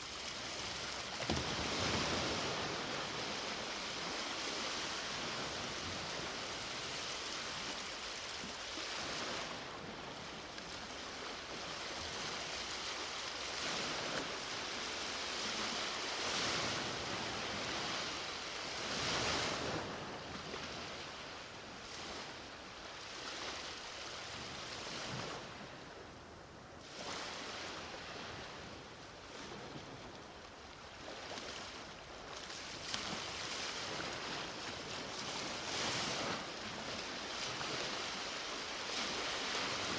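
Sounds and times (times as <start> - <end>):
sea waves breaking on shore: 0.0 - 39.9.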